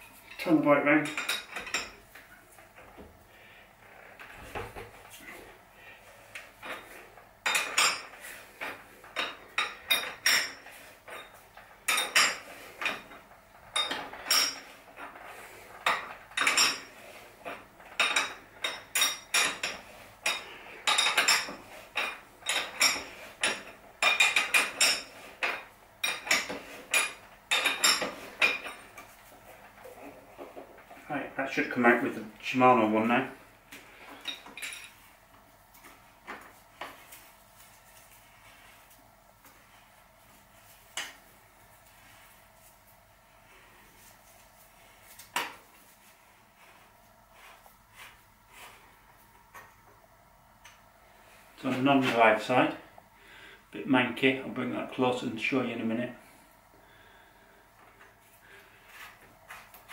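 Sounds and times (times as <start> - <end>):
metal tools clinking and clanking: 6.6 - 15.1, 15.8 - 29.1, 34.2 - 35.0.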